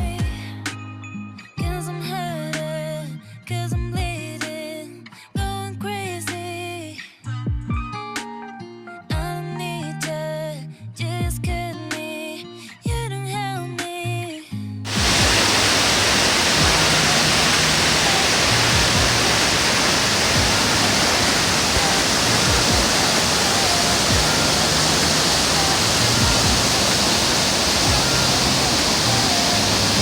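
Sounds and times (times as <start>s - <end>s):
music: 0.0s - 30.0s
mountain stream rushing: 14.9s - 30.0s.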